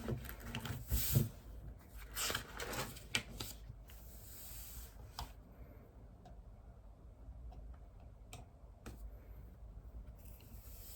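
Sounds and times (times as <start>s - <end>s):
papers rustling: 0.0s - 3.7s.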